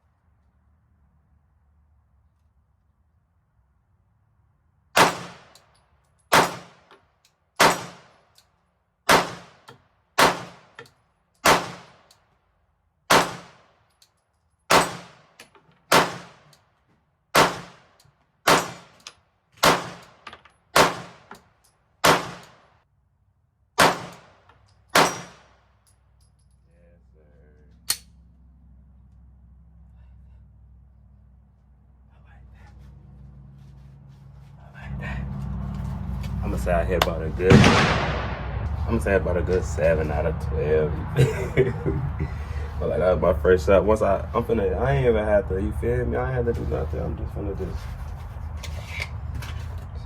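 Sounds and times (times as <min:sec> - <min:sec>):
pistol shots with ringing echo: 0:05.0 - 0:05.6, 0:06.3 - 0:06.9, 0:07.6 - 0:08.1, 0:09.1 - 0:10.7, 0:11.4 - 0:12.0, 0:13.1 - 0:13.7, 0:14.7 - 0:15.3, 0:15.9 - 0:16.5, 0:17.4 - 0:17.9, 0:18.5 - 0:19.0, 0:19.6 - 0:20.2, 0:20.8 - 0:21.3, 0:22.0 - 0:22.6, 0:23.8 - 0:25.6, 0:37.4 - 0:38.7.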